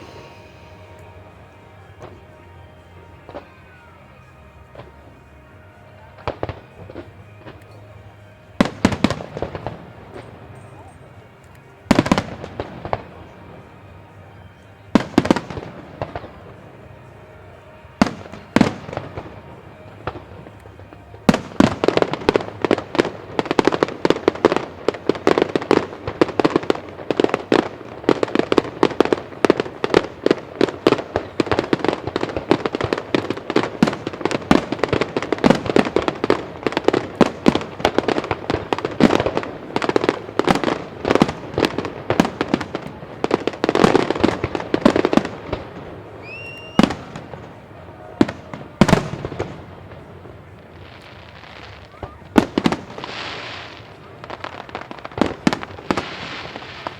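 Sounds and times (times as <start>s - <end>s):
fireworks bangs: 0.0s - 56.9s.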